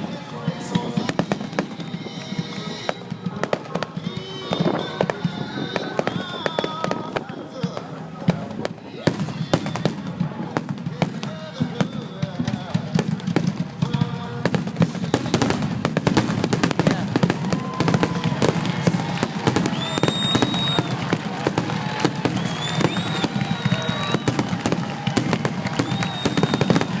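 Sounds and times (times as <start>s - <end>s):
fireworks bangs and crackles: 0.0s - 27.0s
firework whistles: 1.0s - 7.2s, 15.0s - 27.0s.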